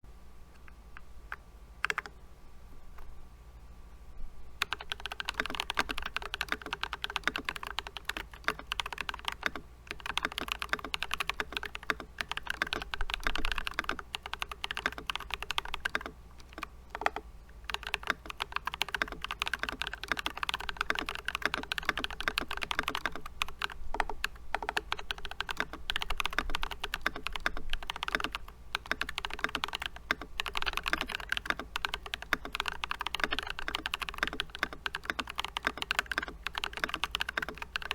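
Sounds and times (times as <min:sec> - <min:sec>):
fast typing on mechanical keyboard: 0:01.8 - 0:02.1, 0:04.6 - 0:37.9.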